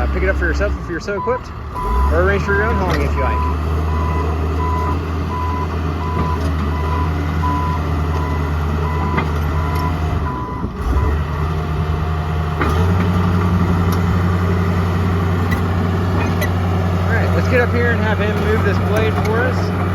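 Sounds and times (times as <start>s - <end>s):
bulldozer diesel engine running: 0.0s - 19.9s
back-up alarm beeping: 1.2s - 10.7s.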